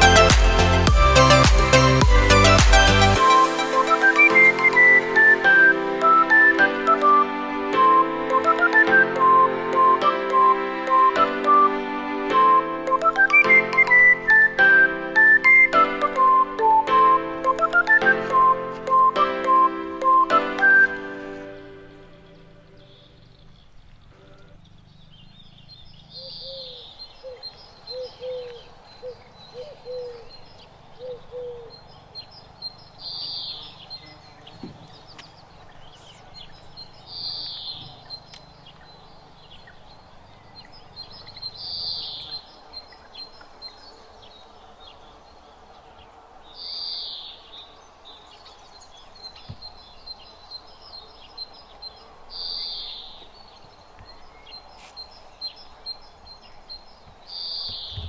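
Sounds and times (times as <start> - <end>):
quick ticking bird notes: 22.0 - 42.5
bird high falling call: 57.3 - 58.0.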